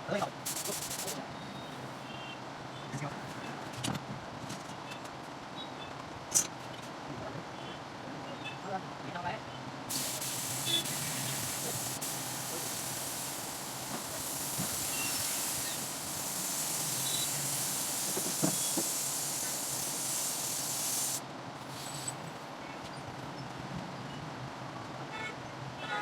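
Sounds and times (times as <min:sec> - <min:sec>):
air spray gun hissing: 0:00.4 - 0:01.2, 0:09.9 - 0:22.1.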